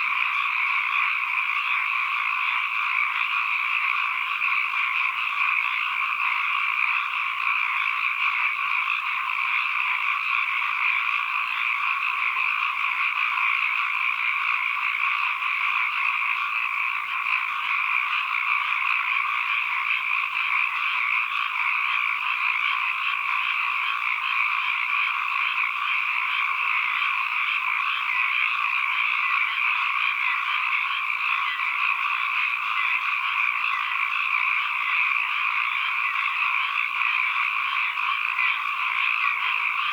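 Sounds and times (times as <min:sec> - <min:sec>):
chorus of frogs croaking: 0:00.0 - 0:39.9.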